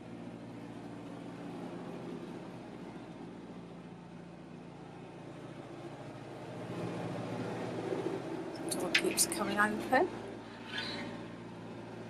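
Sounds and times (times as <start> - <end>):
diesel engine humming: 8.4 - 10.6.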